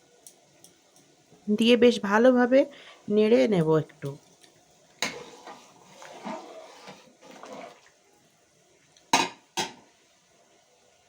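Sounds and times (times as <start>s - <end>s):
ladle stirring pot: 4.3s - 8.0s.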